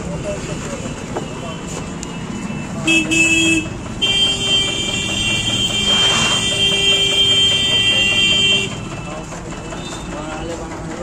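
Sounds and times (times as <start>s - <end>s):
vehicle horn blast: 2.8s - 8.9s.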